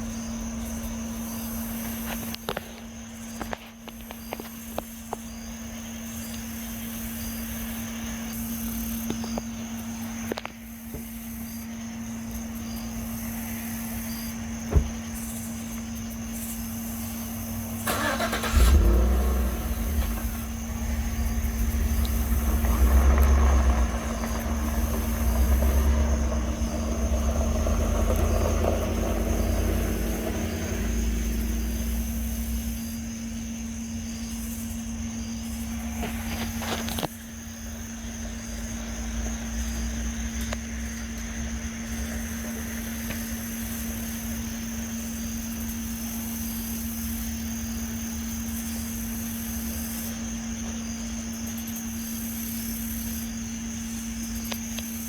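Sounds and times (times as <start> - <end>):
low hum: 17.9 - 33.0
deep rumble: 18.4 - 33.0
high whine: 19.4 - 32.9.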